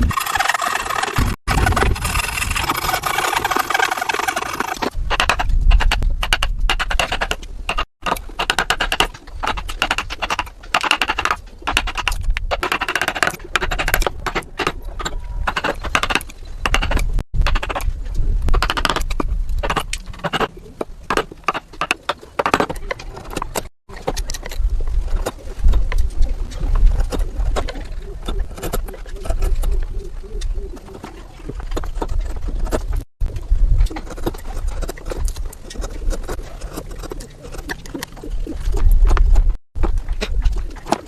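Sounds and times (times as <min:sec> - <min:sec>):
hand tools scraping wood: 0:00.0 - 0:17.1, 0:34.0 - 0:38.5.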